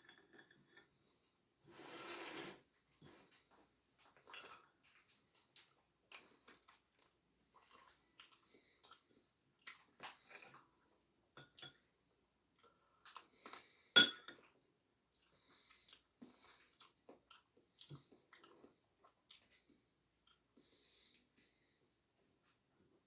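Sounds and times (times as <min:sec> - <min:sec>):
chewing and mouth clicks: 0:04.1 - 0:10.7, 0:15.1 - 0:20.7.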